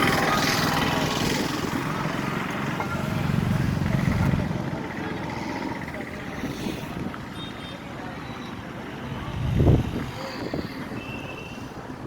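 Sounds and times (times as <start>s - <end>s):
vehicle low rumble: 0.0s - 7.3s.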